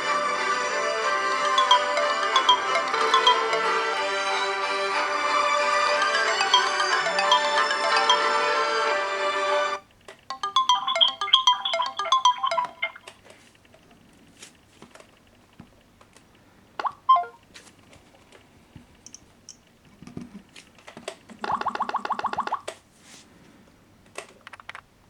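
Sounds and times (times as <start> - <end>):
melodic ringtone: 0.0 - 13.2, 17.0 - 17.4
phone ringtones and alarm tones: 1.4 - 4.9, 5.8 - 13.2, 16.8 - 17.4.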